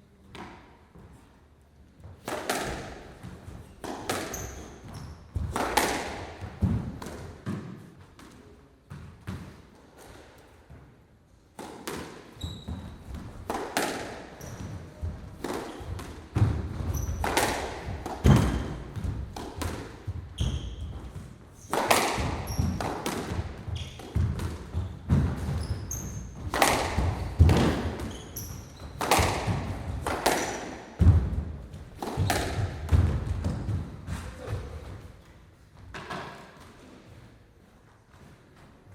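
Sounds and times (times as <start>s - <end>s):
squash ball hitting rackets and walls: 0.2s - 1.3s, 2.0s - 37.4s
shoes squeaking on court floor: 3.2s - 5.9s, 12.1s - 30.9s.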